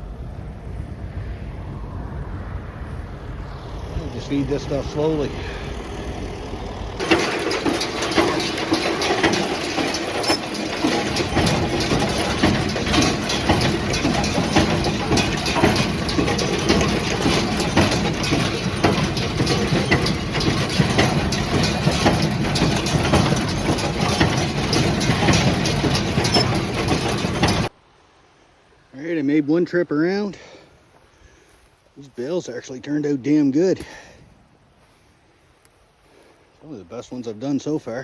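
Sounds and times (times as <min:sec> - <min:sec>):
tractor engine running: 0:02.9 - 0:27.8
baler mechanism knocking: 0:04.0 - 0:27.7.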